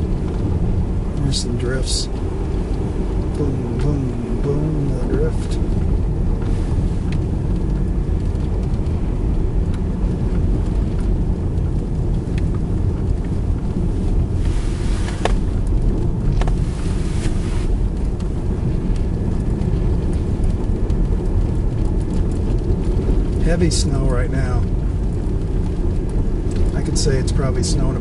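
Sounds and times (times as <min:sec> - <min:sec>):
car engine and tyres rumbling: 0:00.0 - 0:28.0
tyres hissing through snow: 0:14.4 - 0:15.3, 0:16.6 - 0:17.8.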